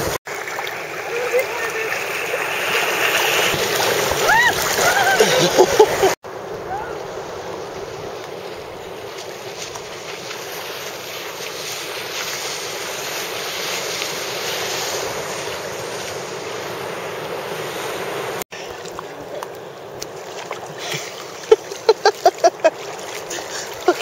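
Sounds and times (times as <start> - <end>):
ocean surf washing: 0.0 - 24.0.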